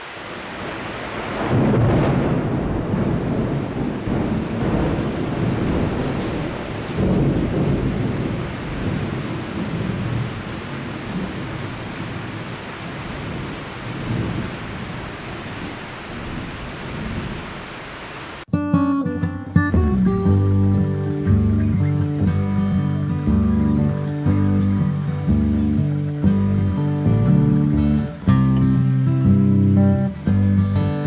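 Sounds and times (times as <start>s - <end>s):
heavy rain: 0.0s - 18.6s, 19.6s - 31.0s
low rolling thunder: 0.3s - 17.6s.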